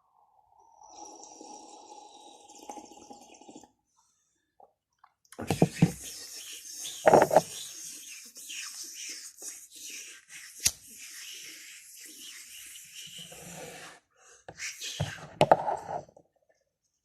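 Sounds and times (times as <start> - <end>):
breathy hissing mouth sounds: 5.7 - 15.3.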